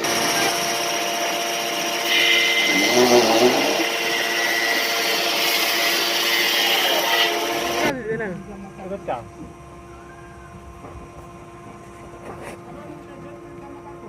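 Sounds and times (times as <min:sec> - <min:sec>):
electric power tool running: 0:00.0 - 0:07.9.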